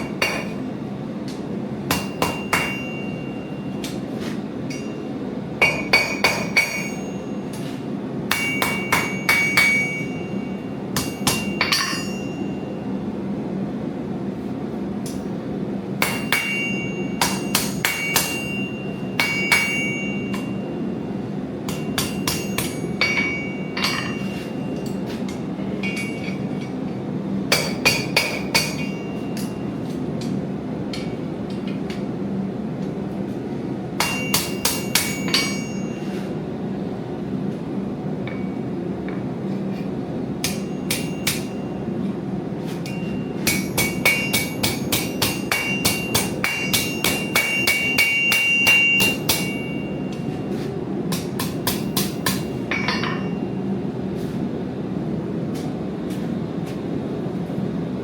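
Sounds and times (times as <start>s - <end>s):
hammer striking anvil: 0.0s - 0.6s, 1.9s - 4.0s, 4.7s - 5.0s, 5.6s - 12.6s, 16.0s - 20.6s, 21.7s - 26.7s, 27.5s - 30.4s, 34.0s - 36.3s, 40.4s - 41.8s, 42.8s - 53.6s.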